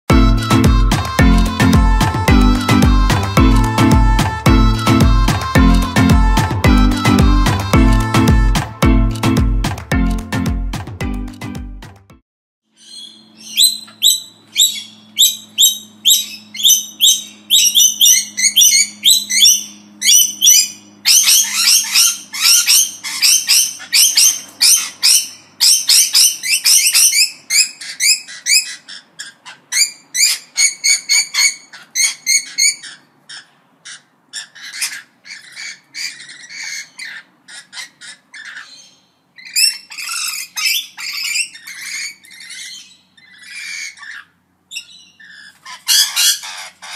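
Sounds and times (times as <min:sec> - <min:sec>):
parrots chattering: 0:12.8 - 0:46.9.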